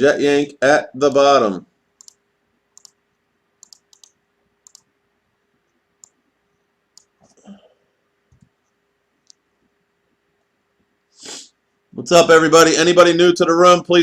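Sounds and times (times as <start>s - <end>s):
faint steady hum: 0.0s - 14.0s
computer mouse clicks: 2.0s - 2.2s, 2.8s - 3.0s, 3.6s - 4.9s, 6.0s - 6.2s, 7.0s - 7.4s.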